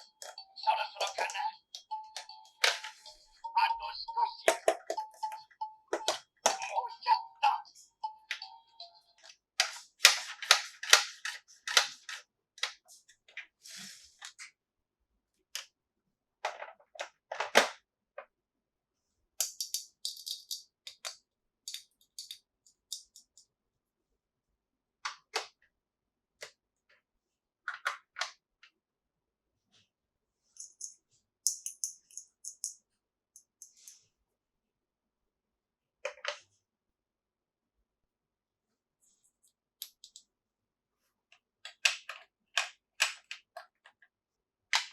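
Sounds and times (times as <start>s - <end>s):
plastic toy pieces clicking: 19.4s - 23.4s, 31.5s - 32.8s.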